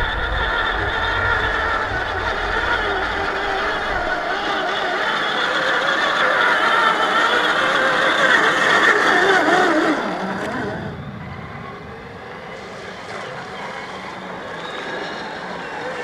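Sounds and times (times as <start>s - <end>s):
electric motor and gears whining: 0.0s - 11.2s.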